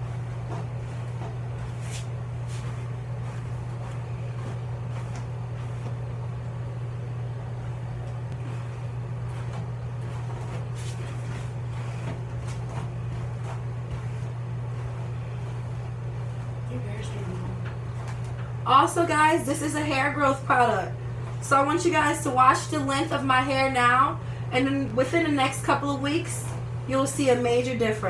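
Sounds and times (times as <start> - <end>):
hairbrush swishing through hair: 0.0 - 6.1, 8.3 - 18.2
low steady hum: 0.0 - 28.0.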